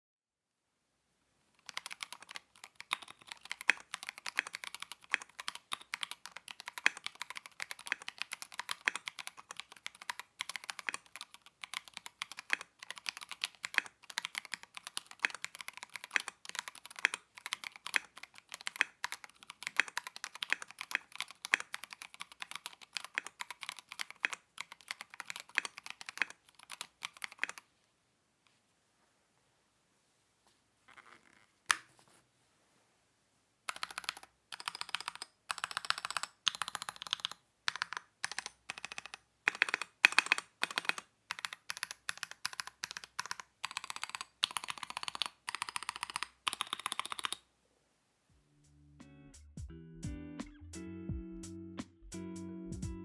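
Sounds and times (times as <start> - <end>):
mechanical keyboard typing: 1.6 - 27.7, 33.7 - 47.4.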